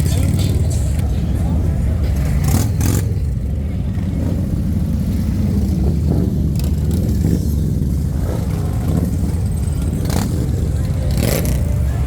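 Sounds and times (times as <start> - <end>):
motorcycles riding past: 0.0 - 12.0.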